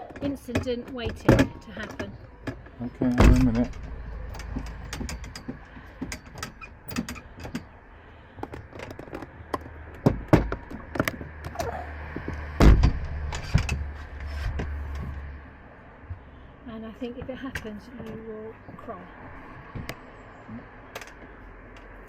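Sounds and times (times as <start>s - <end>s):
loud thumps: 0.2s - 7.8s, 9.9s - 15.2s.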